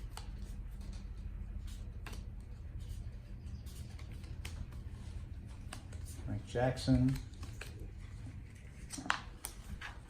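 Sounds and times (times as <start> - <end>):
steady low hum: 0.0 - 10.0
cards flicking: 3.7 - 6.2.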